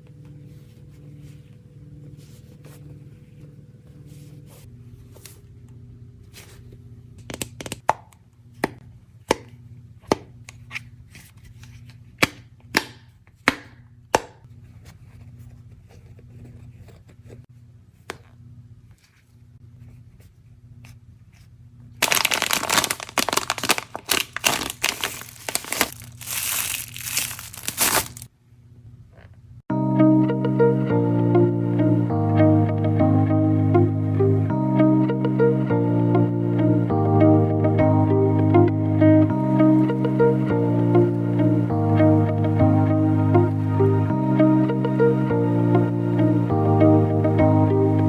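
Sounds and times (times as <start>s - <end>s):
steady low hum: 0.0s - 7.6s
plastic wrappers crinkling: 22.0s - 28.3s.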